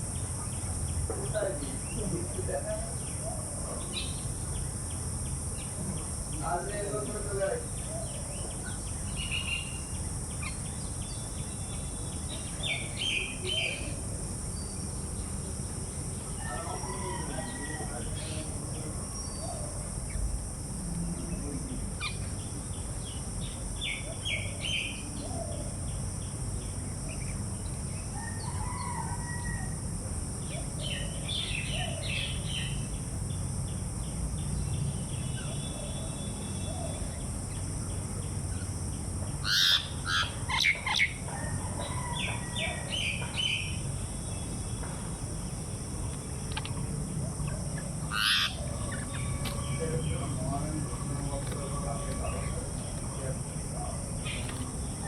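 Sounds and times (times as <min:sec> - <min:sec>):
rooster crowing: 0:16.3 - 0:18.6, 0:28.1 - 0:30.0, 0:39.5 - 0:43.5, 0:48.0 - 0:53.4
small birds chirping: 0:30.5 - 0:41.2, 0:42.0 - 0:55.0.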